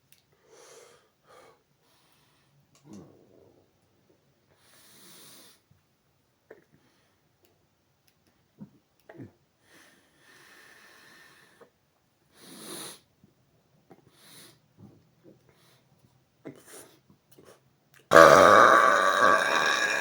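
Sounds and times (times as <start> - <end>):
throat sounds: 18.1 - 20.0.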